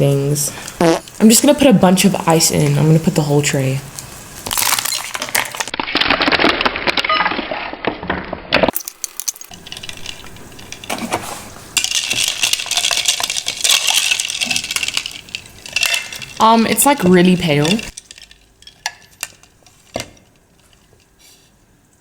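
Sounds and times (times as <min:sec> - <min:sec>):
ice cubes clinking into glass: 0:04.5 - 0:07.2, 0:08.7 - 0:11.0, 0:11.8 - 0:20.2.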